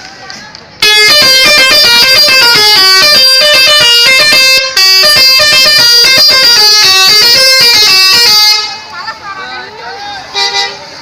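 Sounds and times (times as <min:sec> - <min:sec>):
bus horn playing fast tune: 0:00.8 - 0:08.9, 0:10.3 - 0:10.8.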